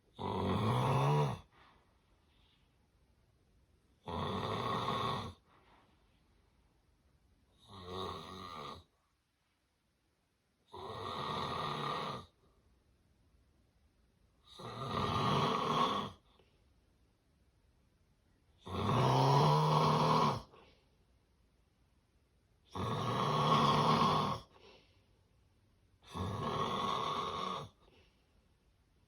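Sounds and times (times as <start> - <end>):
loud rasping snores: 0.2 - 1.5, 4.0 - 5.4, 7.6 - 8.9, 10.7 - 12.4, 14.5 - 16.2, 18.6 - 20.5, 22.7 - 24.5, 26.0 - 27.8
quiet breathing: 0.8 - 4.0, 4.7 - 7.6, 15.4 - 17.0, 19.3 - 21.3, 22.9 - 28.7.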